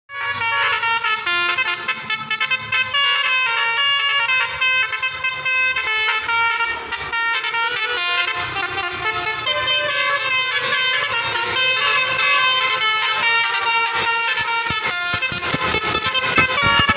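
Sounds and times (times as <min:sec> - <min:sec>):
musical bus horn tune: 0:00.1 - 0:16.9.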